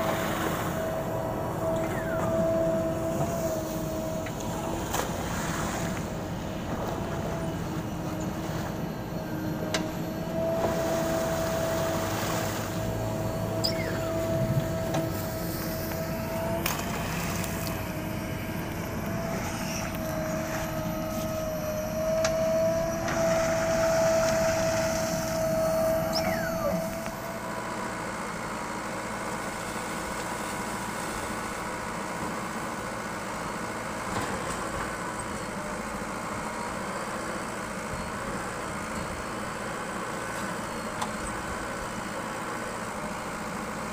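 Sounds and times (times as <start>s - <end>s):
steady whine: 0.0s - 30.5s
diesel engine working under load: 0.0s - 43.9s.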